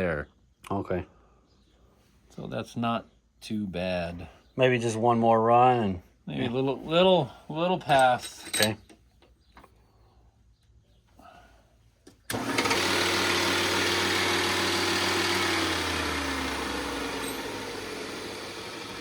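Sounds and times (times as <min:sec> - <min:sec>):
grinding hiss: 0:12.3 - 0:19.0
valve grinding machine motor hum: 0:12.3 - 0:19.0.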